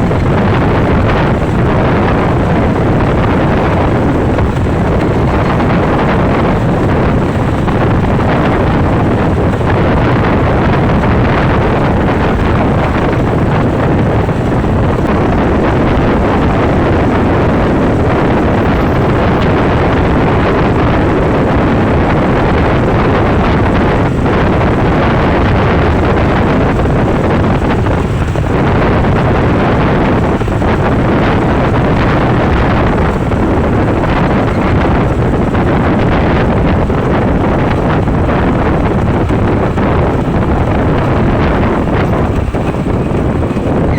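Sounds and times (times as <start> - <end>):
road and engine noise: 0.0 - 43.9
wind rushing over microphone: 0.0 - 43.9.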